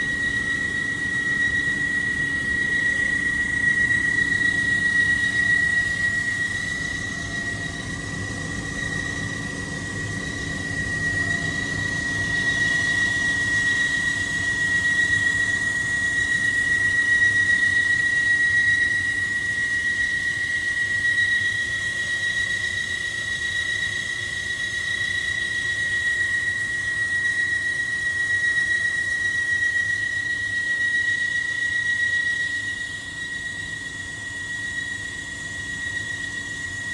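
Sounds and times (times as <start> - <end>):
exhaust fan running: 0.0 - 16.6.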